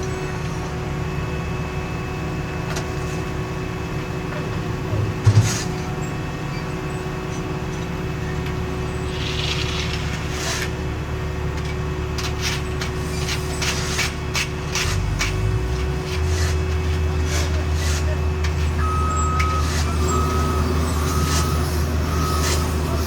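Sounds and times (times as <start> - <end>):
hand tools scraping asphalt: 8.9 - 11.0, 11.6 - 18.8, 19.4 - 23.0.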